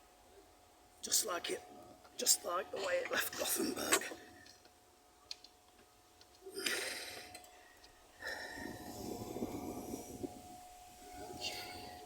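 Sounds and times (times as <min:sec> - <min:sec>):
man breathing heavily: 0:06.6 - 0:10.5.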